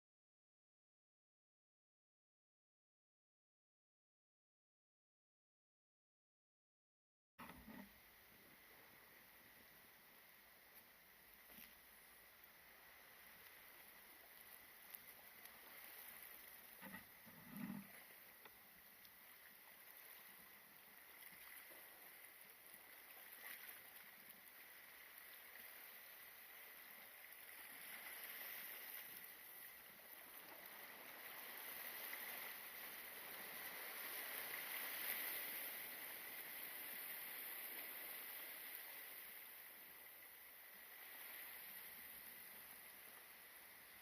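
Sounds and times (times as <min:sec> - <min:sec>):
sea water washing against rocks: 0:19.1 - 0:39.5.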